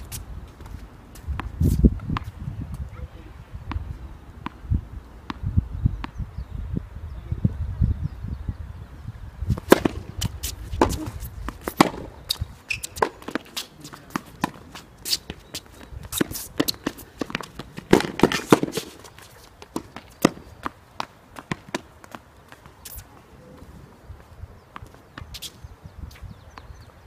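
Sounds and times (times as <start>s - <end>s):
racquets striking tennis ball: 9.5s - 23.1s
ball bouncing on court: 9.7s - 12.1s, 16.2s - 18.9s, 19.7s - 22.2s.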